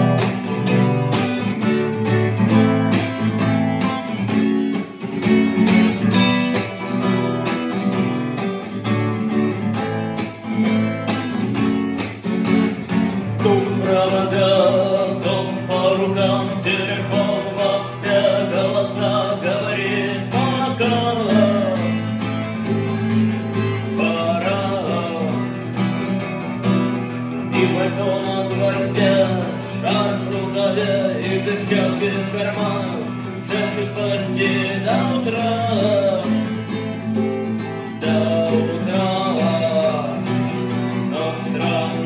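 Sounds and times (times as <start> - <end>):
bass and beat: 0.0 - 9.2
strummed guitar: 0.0 - 42.0.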